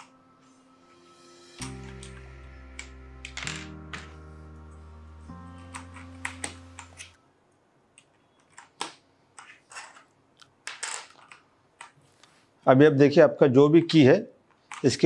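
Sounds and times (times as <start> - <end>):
background music held chord: 0.0 - 7.4.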